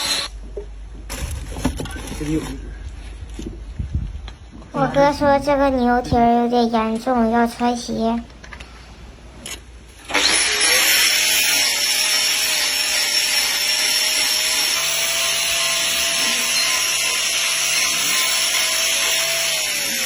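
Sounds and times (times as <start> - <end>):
power trimming tool grinding: 0.0 - 0.4, 1.1 - 2.6, 10.0 - 20.0.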